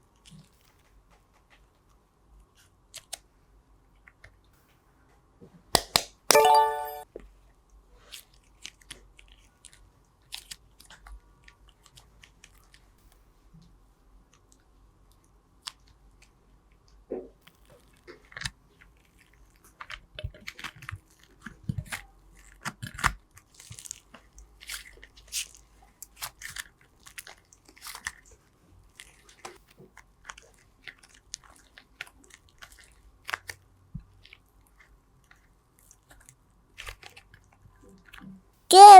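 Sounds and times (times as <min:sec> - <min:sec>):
slime squished by hand: 0:05.8 - 0:06.6.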